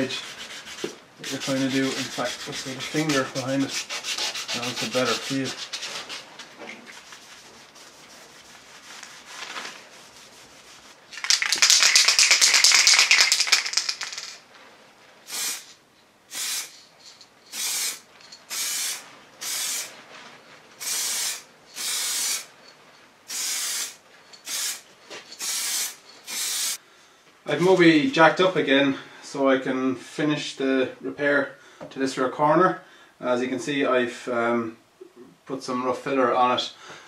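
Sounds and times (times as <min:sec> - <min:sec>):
wet sanding rubbing: 0:00.0 - 0:11.1
aerosol spray can hissing: 0:15.3 - 0:16.8, 0:17.5 - 0:19.9, 0:20.8 - 0:22.5, 0:23.3 - 0:24.8, 0:25.4 - 0:26.8.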